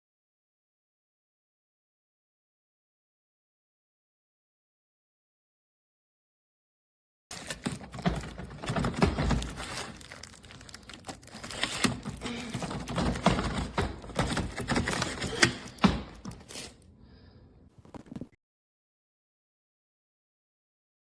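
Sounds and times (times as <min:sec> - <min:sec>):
plastic crinkling: 0:07.3 - 0:15.2.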